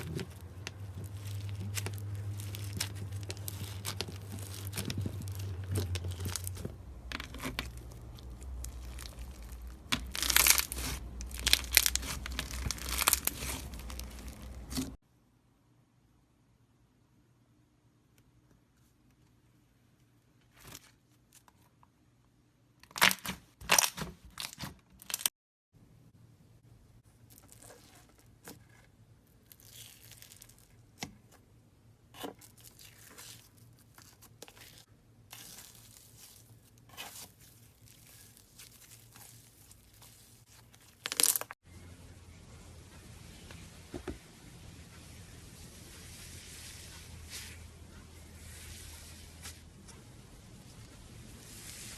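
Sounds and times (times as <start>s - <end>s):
slime crackling and squishing: 0.0s - 15.0s, 22.8s - 25.3s, 27.2s - 31.4s, 32.1s - 41.6s.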